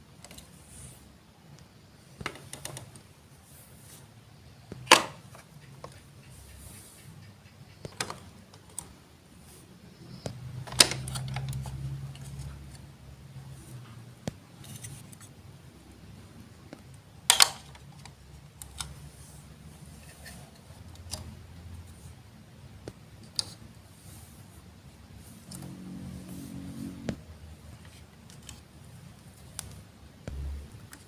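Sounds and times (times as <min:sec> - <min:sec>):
low rumble: 0:30.3 - 0:30.8.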